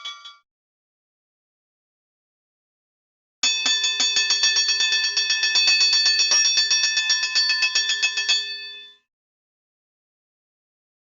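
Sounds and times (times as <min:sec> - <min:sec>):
bell struck rapidly: 0:03.4 - 0:09.1.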